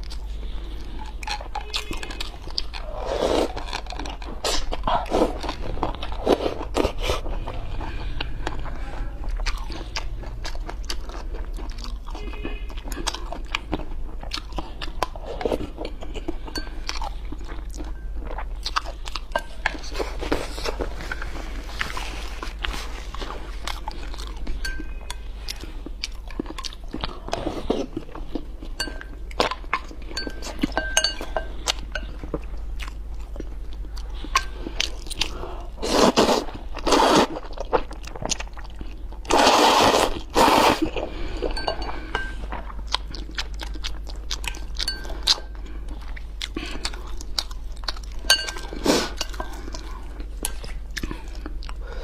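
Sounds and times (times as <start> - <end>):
chewing: 0.0 - 52.0
slurping noodles: 2.8 - 3.7, 35.8 - 37.4, 39.3 - 41.4
chopsticks clinking against a bowl: 24.6 - 25.2, 28.8 - 32.3, 41.5 - 42.5, 44.5 - 45.6, 48.2 - 49.6.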